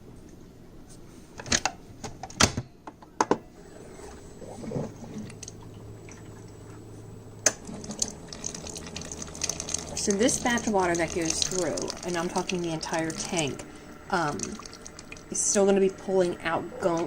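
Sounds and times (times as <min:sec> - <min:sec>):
coffee maker humming: 0:03.5 - 0:17.0.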